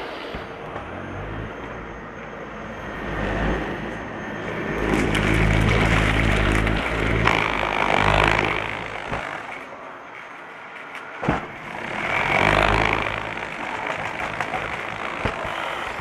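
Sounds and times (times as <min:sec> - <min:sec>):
vacuum cleaner sucking debris: 0:11.8 - 0:16.0.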